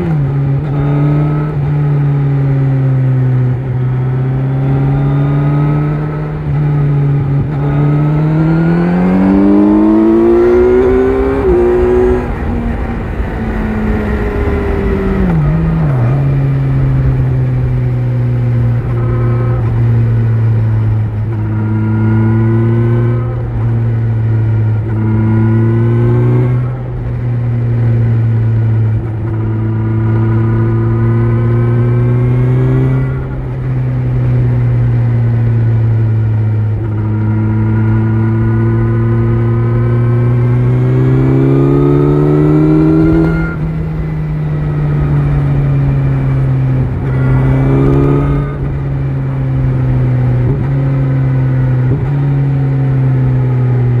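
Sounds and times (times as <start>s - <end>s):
motorcycle engine revving: 0.0s - 54.0s
wind rush: 8.5s - 18.1s.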